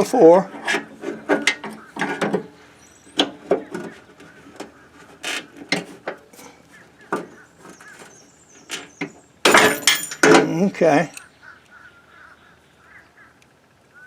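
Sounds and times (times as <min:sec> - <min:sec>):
hand tools clicking on metal: 0:00.5 - 0:11.2.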